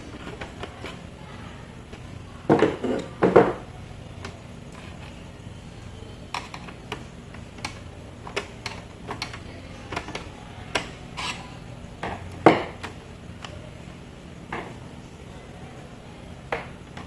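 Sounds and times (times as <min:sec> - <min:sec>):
small parts and tools clicking: 0:06.3 - 0:11.4.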